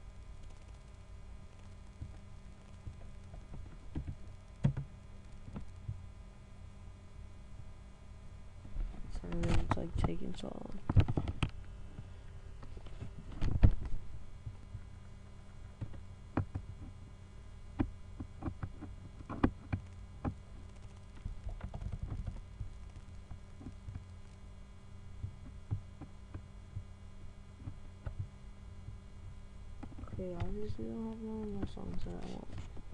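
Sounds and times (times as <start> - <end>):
steady low hum: 0.0 - 32.9.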